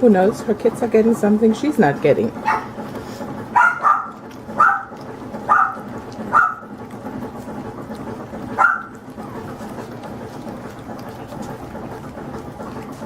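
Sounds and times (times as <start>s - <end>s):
dog yapping: 2.4s - 7.0s, 8.4s - 11.1s.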